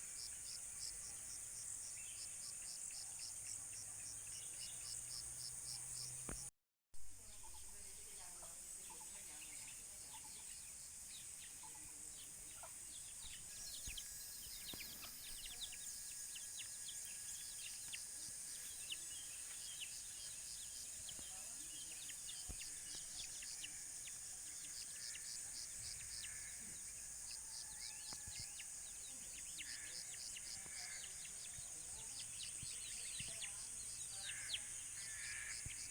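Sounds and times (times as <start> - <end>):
insects droning: 0.0 - 6.5, 7.5 - 35.9
birds chirping: 8.9 - 35.9.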